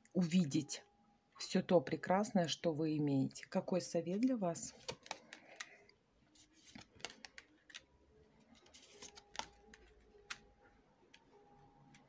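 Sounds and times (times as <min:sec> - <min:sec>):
cards clicking and tapping: 0:04.1 - 0:05.9, 0:06.6 - 0:07.9, 0:08.5 - 0:10.5.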